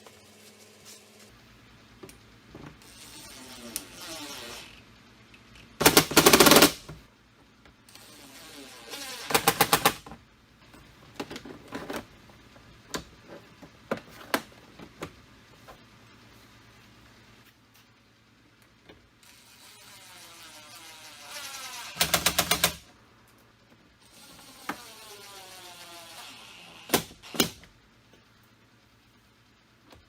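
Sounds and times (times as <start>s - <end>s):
rapid mechanical tool clatter: 21.4s - 22.8s.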